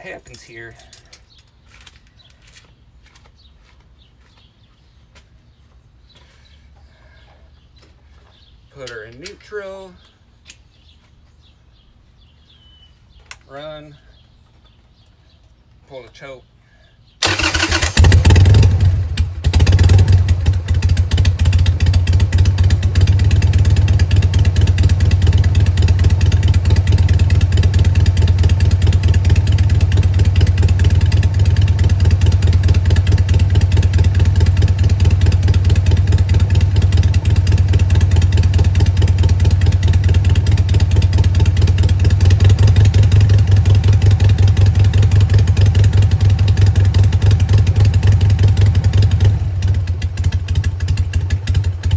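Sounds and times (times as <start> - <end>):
motorcycle engine starting and idling: 0.0 - 1.5, 17.2 - 51.9.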